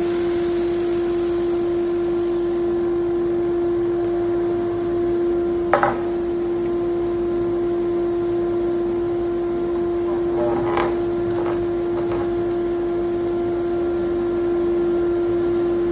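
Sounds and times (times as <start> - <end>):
sander scratching workpiece: 10.0 - 12.6.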